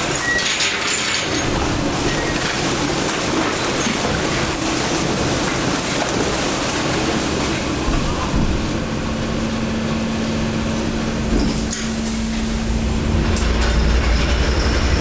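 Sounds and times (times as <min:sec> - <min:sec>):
waste compactor machine rush: 0:00.0 - 0:15.0
second steady hum: 0:11.3 - 0:15.0.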